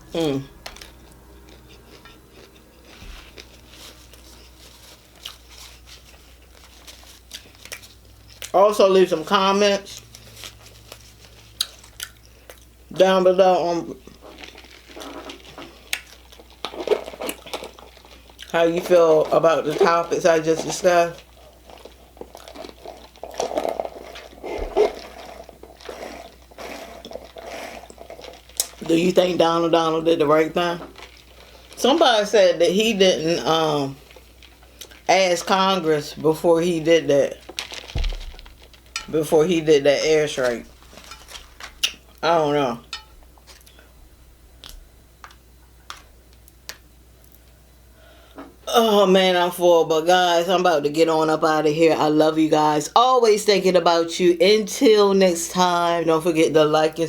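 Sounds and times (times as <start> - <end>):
person chewing and swallowing: 0.5 - 8.5, 11.4 - 12.8, 21.2 - 28.8
eating clicks and crinkles: 0.6 - 8.5, 14.0 - 19.0, 20.6 - 28.9, 30.6 - 31.8, 34.0 - 35.1
low hum: 36.1 - 48.1.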